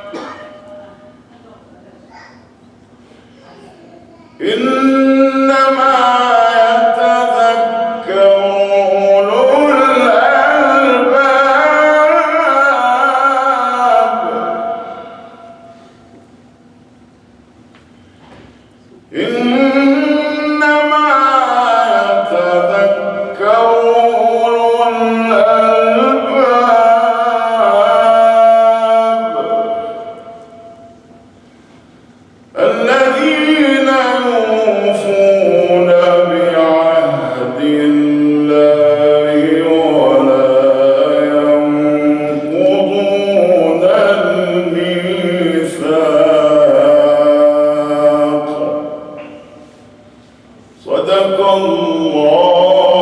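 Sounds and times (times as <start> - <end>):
man chanting recitation: 4.3 - 15.6, 19.1 - 30.6, 32.6 - 49.6, 50.8 - 53.0.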